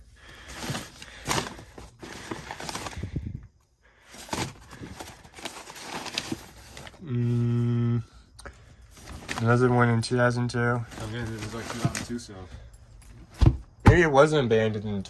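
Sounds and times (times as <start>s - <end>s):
rustling: 0.2s - 3.2s, 4.0s - 7.0s, 8.8s - 9.8s, 10.8s - 13.6s
man humming: 7.0s - 8.2s.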